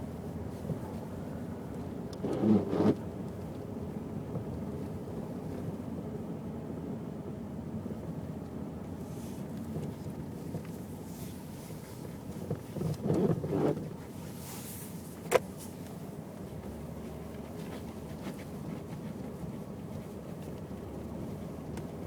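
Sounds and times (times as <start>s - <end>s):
car road noise: 0.0s - 5.9s.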